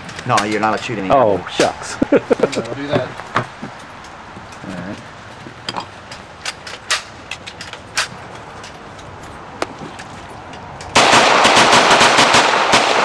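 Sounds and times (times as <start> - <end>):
rapid gunfire: 11.0 - 13.0.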